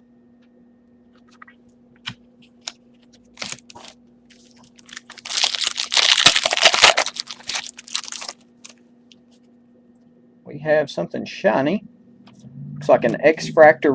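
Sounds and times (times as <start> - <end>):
foil wrapper crinkling: 2.6 - 8.8
foil wrapper clicks: 4.7 - 8.8.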